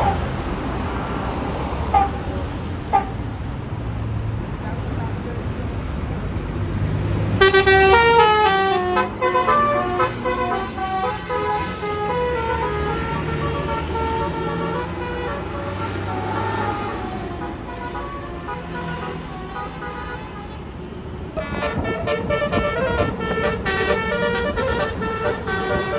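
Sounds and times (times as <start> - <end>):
bus engine running: 0.0 - 25.9
musical air horn tune: 7.4 - 20.6, 21.4 - 25.9.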